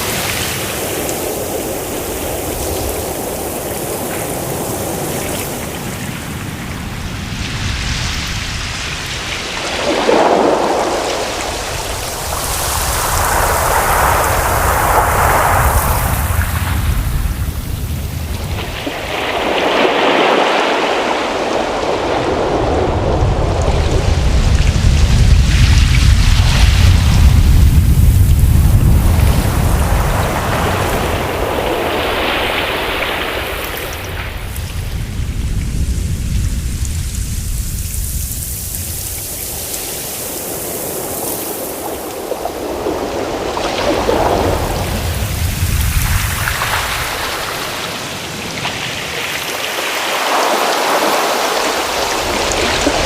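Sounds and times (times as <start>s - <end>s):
ocean waves rushing: 0.0s - 53.0s
deep rumble: 22.2s - 31.8s, 34.3s - 39.8s.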